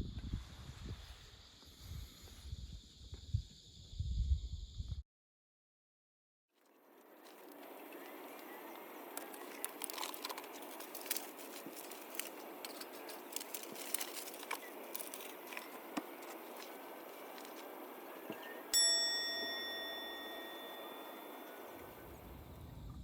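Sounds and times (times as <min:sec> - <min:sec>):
irregular crackling and ticking: 0:07.0 - 0:18.3
sharp metallic clink: 0:18.8 - 0:21.8.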